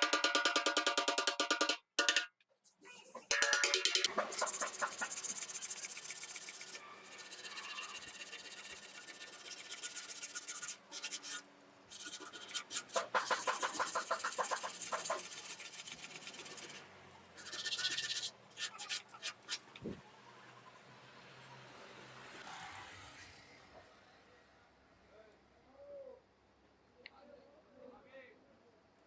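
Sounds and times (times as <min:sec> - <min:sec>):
rapid scraping strokes: 0:03.2 - 0:16.8, 0:17.4 - 0:19.9.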